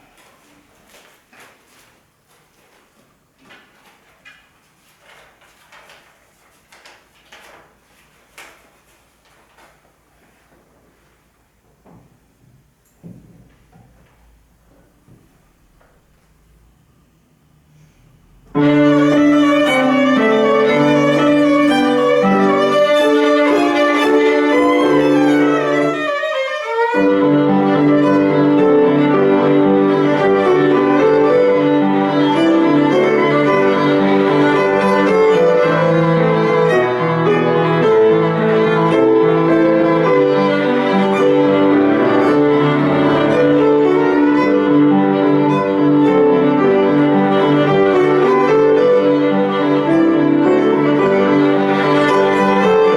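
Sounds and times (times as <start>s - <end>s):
piano accompaniment: 18.4s - 52.9s
solo violin: 18.6s - 52.9s.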